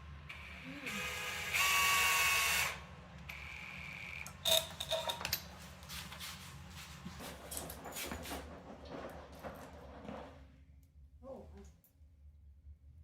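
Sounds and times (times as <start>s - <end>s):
power drill whirring: 0.3s - 4.7s.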